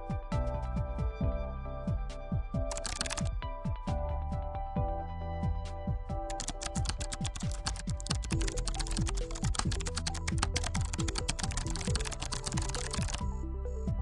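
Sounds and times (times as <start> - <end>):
electronic music with steady beat: 0.0 - 14.0
rapid keyboard typing: 2.6 - 3.4, 6.2 - 13.9.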